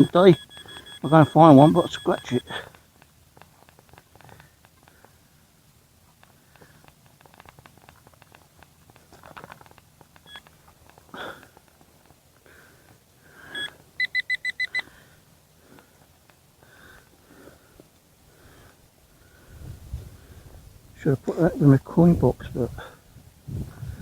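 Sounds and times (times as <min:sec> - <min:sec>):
metal detector beeps: 0:00.0 - 0:02.8, 0:10.2 - 0:10.6, 0:13.5 - 0:14.9.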